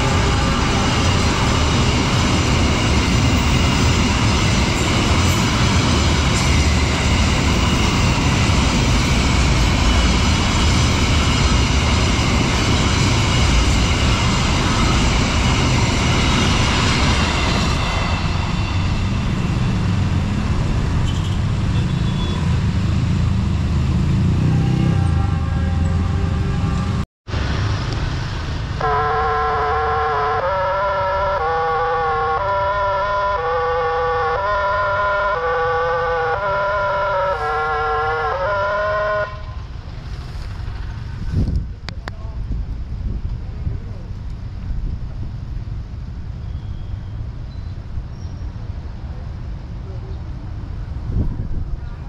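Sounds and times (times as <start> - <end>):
train rumbling over crossing: 0.0 - 52.0
electronic warning siren: 28.8 - 39.0.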